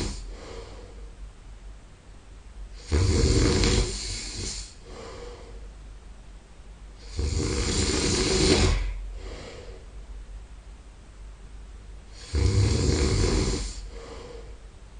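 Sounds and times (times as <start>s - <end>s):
man snoring: 0.0s - 0.9s, 2.7s - 5.6s, 7.0s - 9.8s, 12.1s - 14.6s
soft breath: 0.0s - 1.3s, 3.7s - 5.8s, 7.8s - 10.1s, 13.5s - 14.8s.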